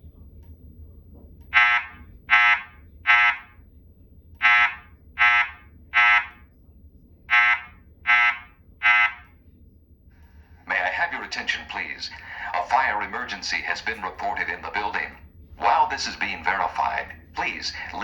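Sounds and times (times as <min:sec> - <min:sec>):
buzzy fire alarm tones: 0:00.1 - 0:06.6, 0:07.2 - 0:09.5.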